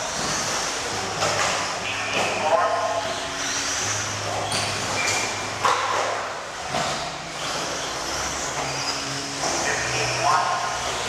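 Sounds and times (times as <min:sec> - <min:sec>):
electric motor whine: 0:06.5 - 0:11.0.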